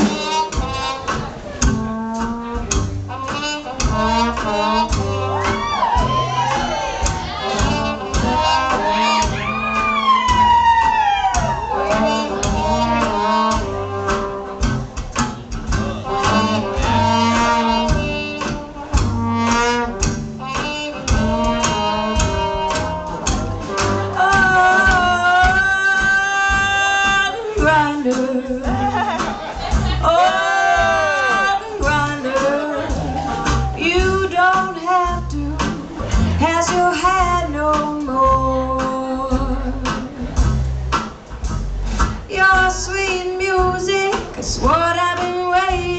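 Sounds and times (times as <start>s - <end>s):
plucked string accompaniment: 0.0s - 45.9s
regular bass line: 0.0s - 45.9s
person singing: 30.0s - 35.7s.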